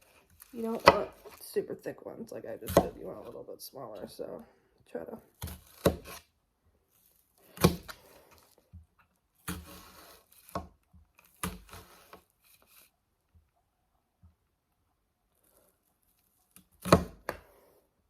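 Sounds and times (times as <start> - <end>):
knife chopping onion on board: 0.6 - 1.4, 2.7 - 3.2, 5.4 - 6.2, 7.6 - 8.0, 9.4 - 10.8, 11.4 - 12.0, 16.8 - 17.4.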